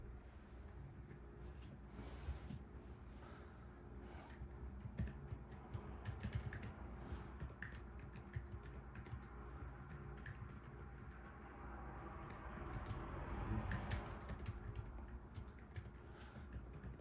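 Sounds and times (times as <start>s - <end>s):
muffled keyboard typing: 4.3s - 11.5s, 12.1s - 17.0s.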